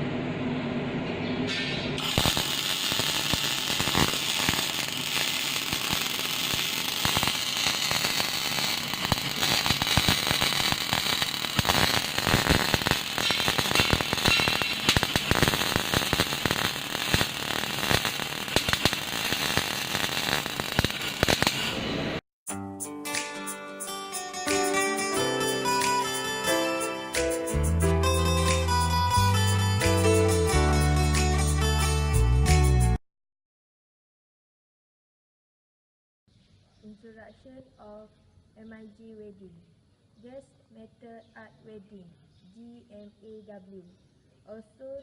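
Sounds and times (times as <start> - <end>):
welding arc crackling: 2.0 - 22.2.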